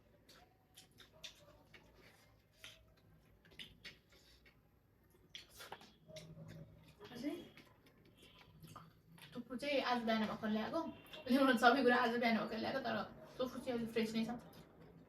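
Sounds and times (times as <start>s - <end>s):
quiet chewing and mouth sounds: 0.0s - 11.3s, 14.3s - 15.0s.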